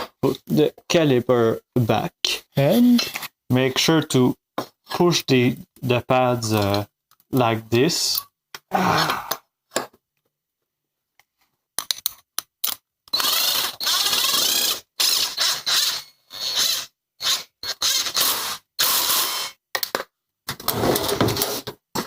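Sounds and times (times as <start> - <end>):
electric ratchet bursts: 13.1 - 19.6.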